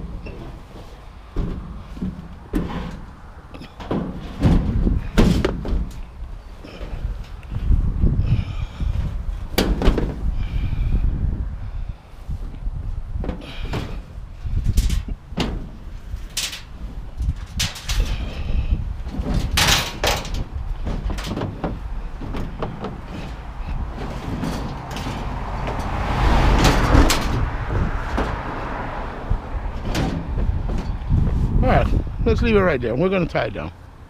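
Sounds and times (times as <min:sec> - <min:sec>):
scrap metal clanking and scraping: 0:00.0 - 0:07.7, 0:13.2 - 0:28.8, 0:29.6 - 0:31.6
wind rumble on microphone: 0:00.0 - 0:34.0.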